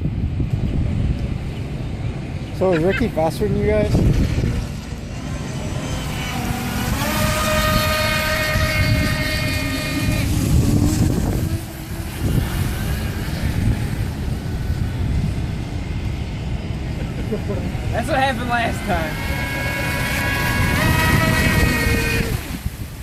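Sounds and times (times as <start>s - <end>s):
low rushing noise: 0.0s - 23.0s
electric motor whining: 3.5s - 15.6s, 18.0s - 23.0s.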